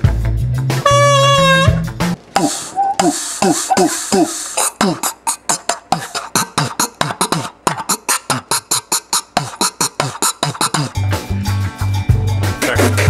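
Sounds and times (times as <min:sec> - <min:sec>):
beatbox mouth noises: 0:02.4 - 0:11.2, 0:12.4 - 0:13.0.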